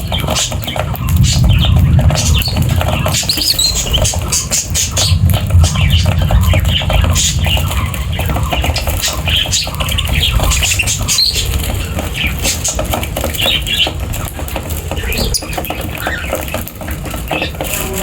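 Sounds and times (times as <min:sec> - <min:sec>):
bird chirps: 0:00.0 - 0:14.0
birds fluttering and rustling: 0:00.0 - 0:18.0
low rumble: 0:00.9 - 0:16.6.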